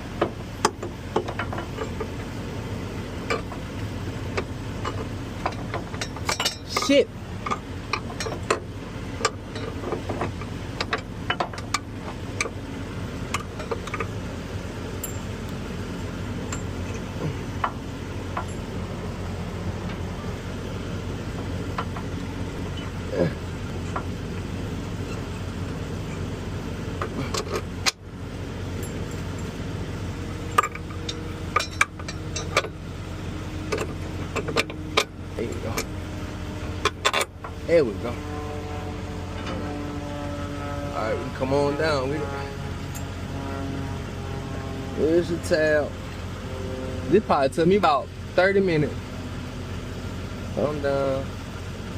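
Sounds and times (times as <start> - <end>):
vehicle engine running: 0.0 - 51.9
metallic clinks of tools: 5.9 - 6.9, 15.0 - 15.3.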